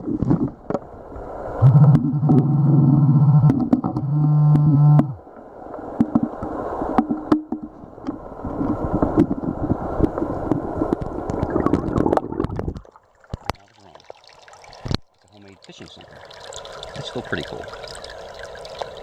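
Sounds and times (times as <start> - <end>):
water sloshing: 5.9 - 19.0.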